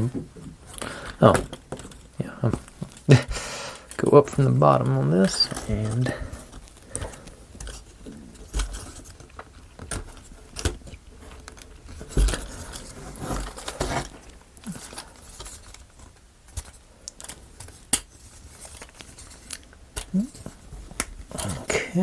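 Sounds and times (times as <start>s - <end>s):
wooden parts clicking and tapping: 0.0s - 21.5s.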